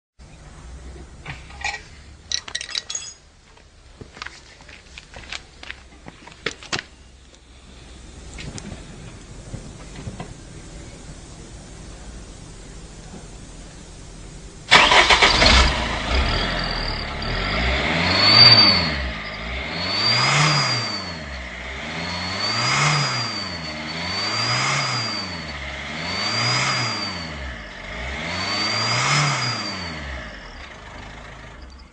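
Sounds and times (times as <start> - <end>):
car engine revving: 7.5 - 31.9
high exhaust whistle: 14.7 - 31.9.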